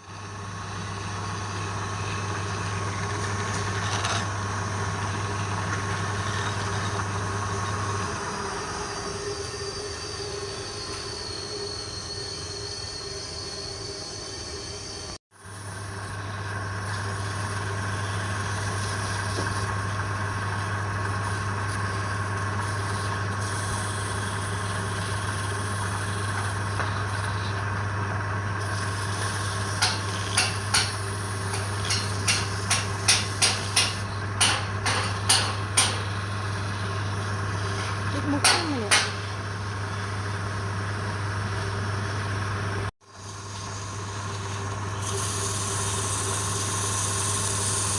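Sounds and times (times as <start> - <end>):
lathe motor hum: 15.6 - 34.4.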